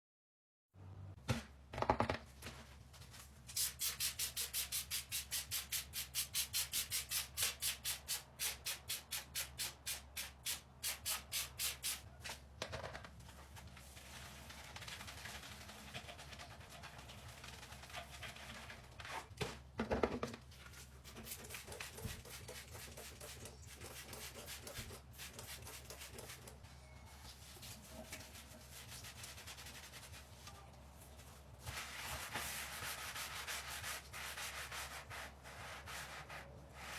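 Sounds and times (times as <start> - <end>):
sink being scrubbed by hand: 3.5 - 12.0, 21.0 - 26.6, 31.6 - 36.9.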